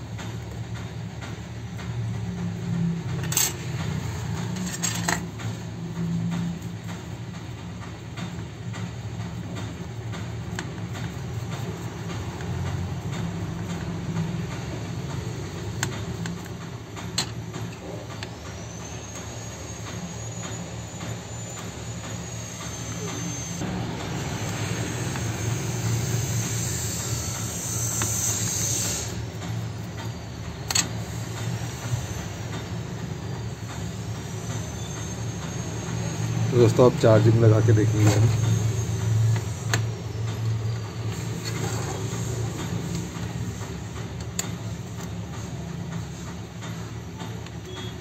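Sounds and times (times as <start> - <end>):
small motor humming and whining: 17.2 - 36.6.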